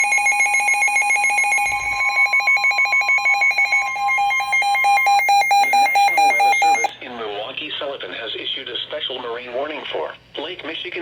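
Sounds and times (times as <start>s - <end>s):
pulsing electronic alarm: 0.0s - 6.9s.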